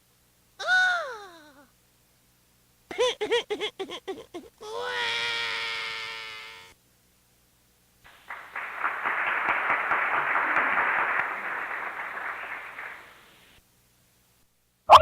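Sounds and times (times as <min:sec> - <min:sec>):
pitched cry-like sound: 0:00.6 - 0:01.7, 0:02.9 - 0:06.8
crowd clapping: 0:08.1 - 0:13.6.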